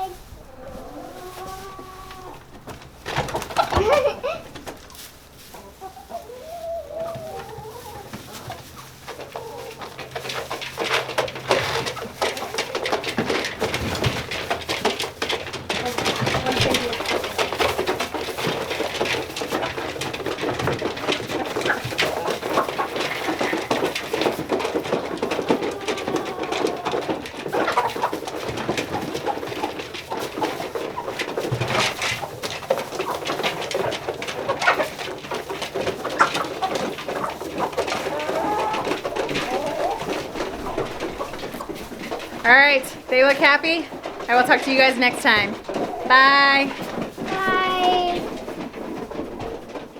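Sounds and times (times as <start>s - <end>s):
hens clucking: 0.0s - 49.9s
hens pecking at feed: 0.0s - 49.9s.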